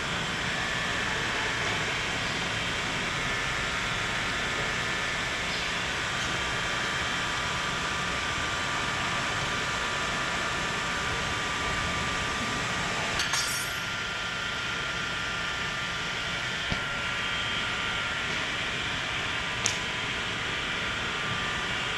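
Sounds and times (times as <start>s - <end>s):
metallic clink: 13.2s - 13.9s.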